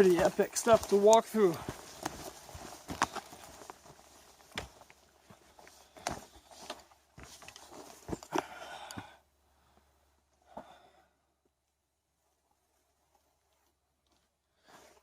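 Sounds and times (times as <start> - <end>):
boots stepping on loose rock: 0.0 - 8.5.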